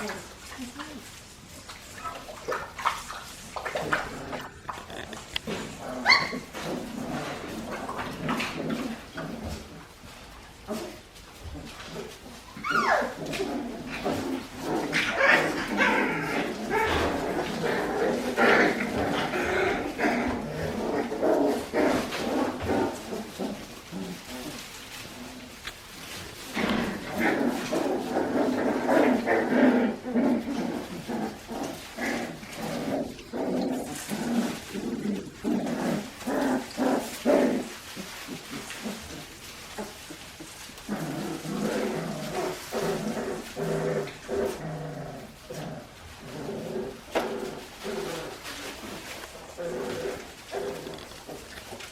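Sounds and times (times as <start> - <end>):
puppies yipping and whimpering: 1.8 - 6.9, 12.4 - 13.4
puppies whining and yipping: 6.0 - 6.7, 12.4 - 13.4.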